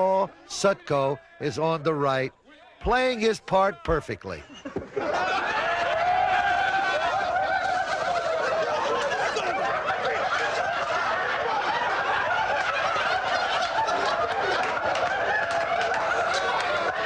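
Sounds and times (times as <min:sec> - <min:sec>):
group of men laughing: 0:04.3 - 0:17.0.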